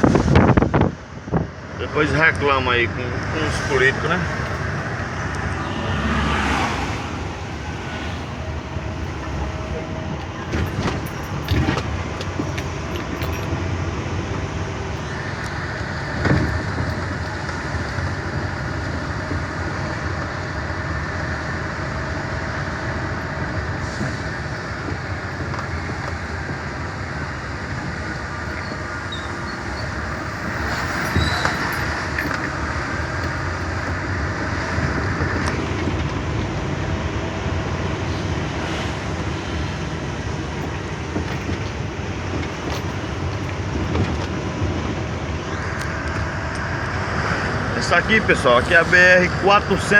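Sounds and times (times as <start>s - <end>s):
truck engine and road drone: 0.0s - 49.9s
rushing noise: 2.8s - 36.1s.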